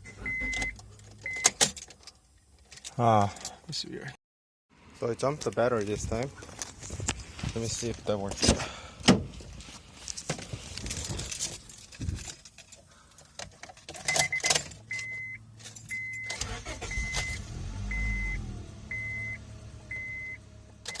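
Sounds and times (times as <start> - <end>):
dashboard warning chime beeping: 0.1 - 1.5, 14.1 - 21.0
car engine cranking: 15.8 - 21.0.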